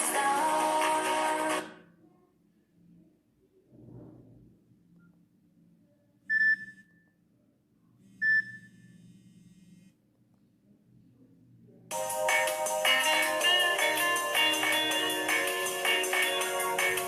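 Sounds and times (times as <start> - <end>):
high electronic phone beeps: 6.3 - 6.9, 8.2 - 8.7.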